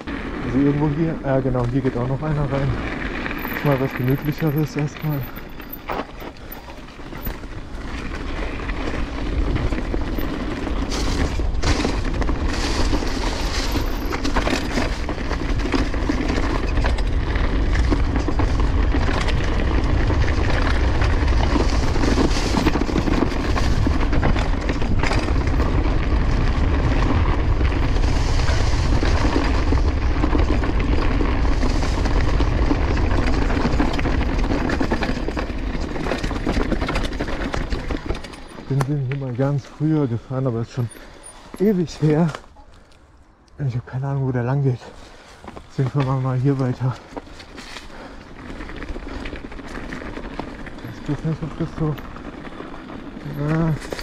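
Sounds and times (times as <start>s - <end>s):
bike knocks and rattles: 0.0s - 39.8s
bike tyres on dirt: 0.0s - 54.0s
bike chain rattling: 0.1s - 42.3s, 46.2s - 54.0s
wind buffeting microphone: 6.8s - 40.0s.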